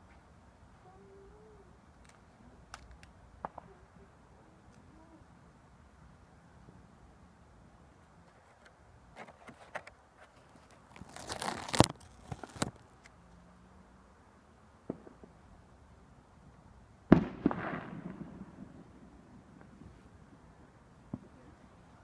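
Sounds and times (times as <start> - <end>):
firecrackers crackling: 1.9 - 4.9, 17.1 - 22.0
firecracker bangs: 17.1 - 19.8.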